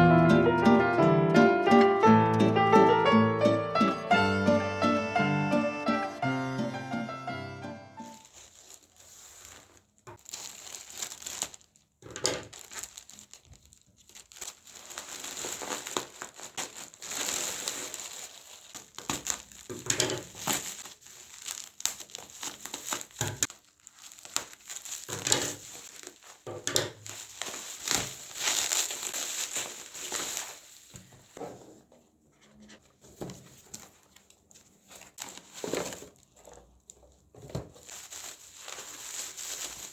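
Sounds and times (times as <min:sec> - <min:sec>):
packaging crinkling: 0:08.0 - 0:31.4, 0:33.1 - 0:39.9.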